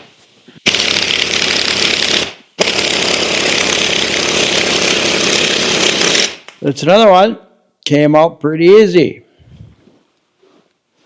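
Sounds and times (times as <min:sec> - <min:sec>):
power tool running: 0:00.6 - 0:06.5.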